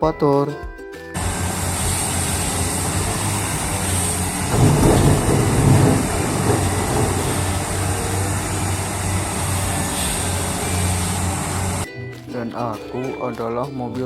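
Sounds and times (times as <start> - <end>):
excavator engine humming: 1.2 - 11.9
rushing noise: 1.2 - 11.9.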